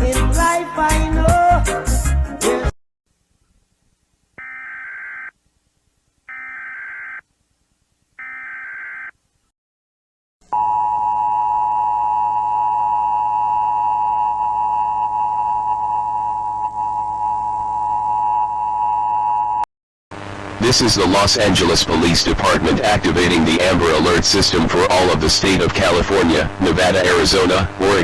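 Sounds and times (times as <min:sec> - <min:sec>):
two-tone attention alarm: 0:04.4 - 0:05.3, 0:06.3 - 0:07.2, 0:08.2 - 0:09.1.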